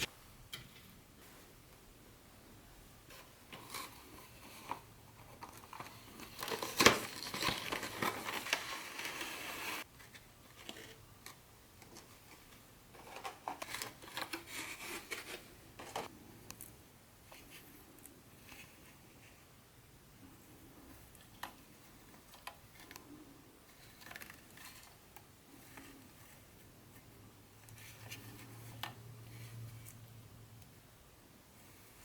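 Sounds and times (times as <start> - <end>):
packaging crinkling and rustling: 3.5 - 9.8.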